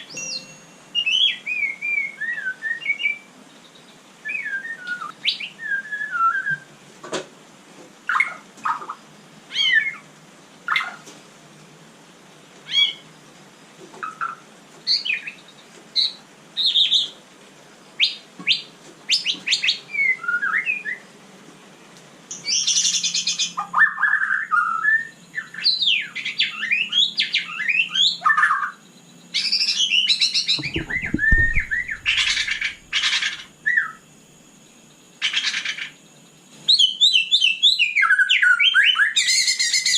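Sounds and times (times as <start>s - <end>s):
bird singing whistled notes: 0.0s - 6.7s, 18.0s - 21.1s, 22.3s - 34.0s, 36.7s - 39.9s
harsh rasping bird notes: 30.5s - 33.5s
low thud: 30.6s - 32.9s.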